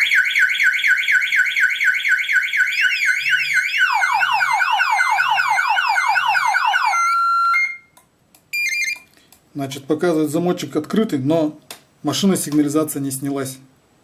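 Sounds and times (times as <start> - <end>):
car alarm siren: 0.0 - 7.9.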